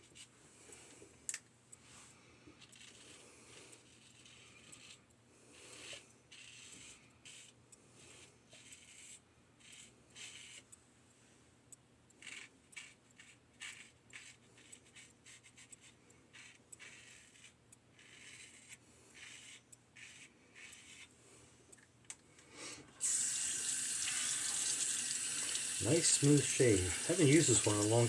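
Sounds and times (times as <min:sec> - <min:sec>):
razor scraping lathered stubble: 0:02.6 - 0:03.2, 0:03.8 - 0:05.0, 0:05.6 - 0:07.5, 0:08.1 - 0:10.6, 0:12.2 - 0:21.1, 0:23.0 - 0:28.0.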